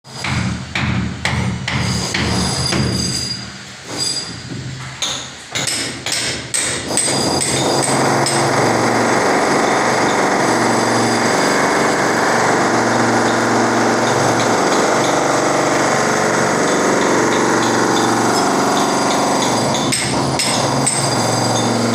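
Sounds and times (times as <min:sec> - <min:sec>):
sharp hammer strikes: 0:00.2 - 0:03.0, 0:05.0 - 0:08.5, 0:13.2 - 0:21.9
loud steady machine noise: 0:05.6 - 0:21.9.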